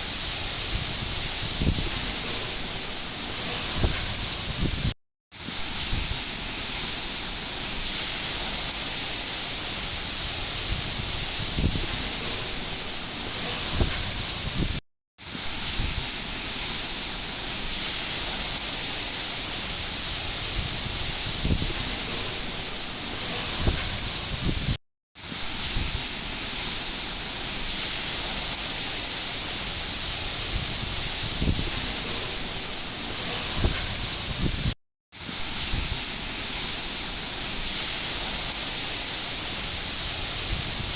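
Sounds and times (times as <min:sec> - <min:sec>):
heavy rain hiss: 0:00.0 - 0:40.9.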